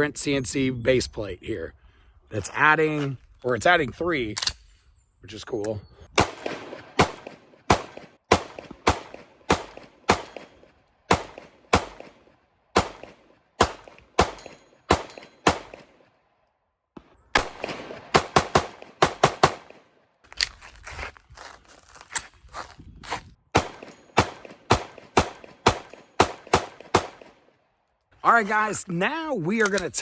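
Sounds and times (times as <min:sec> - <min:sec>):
pistol shots: 0:06.2 - 0:16.0, 0:17.3 - 0:19.9, 0:23.5 - 0:27.4.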